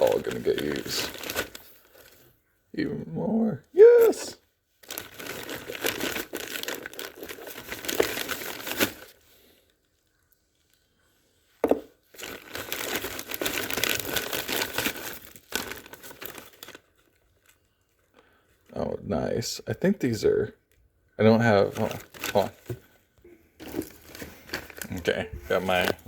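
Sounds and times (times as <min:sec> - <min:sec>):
plastic packaging crinkling: 0:00.0 - 0:02.4, 0:04.7 - 0:11.0, 0:11.6 - 0:18.7, 0:21.4 - 0:26.0.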